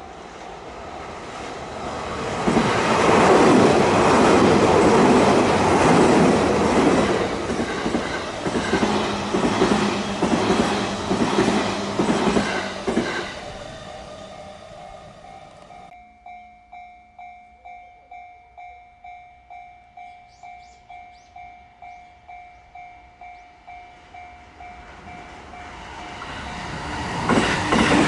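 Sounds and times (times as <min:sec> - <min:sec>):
electric train passing: 0:00.0 - 0:28.0
wheels clacking over rail joints: 0:25.0 - 0:28.0.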